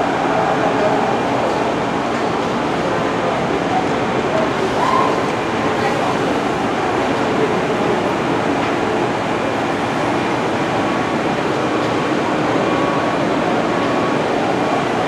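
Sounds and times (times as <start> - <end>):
train wheels rumbling on rail: 0.0 - 15.0.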